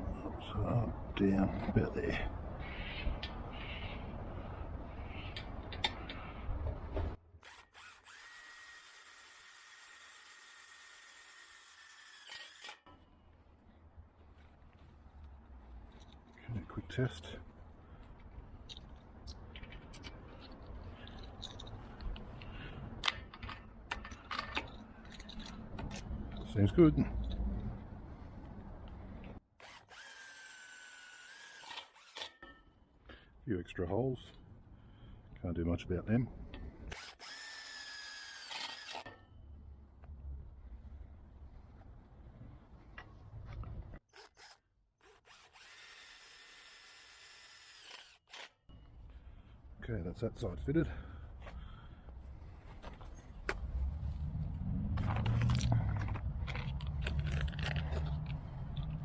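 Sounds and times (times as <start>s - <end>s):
cordless drill whining: 7.4s - 12.8s, 29.6s - 32.4s, 36.9s - 39.2s, 44.1s - 48.5s
low rumbling handling noise: 52.2s - 59.0s.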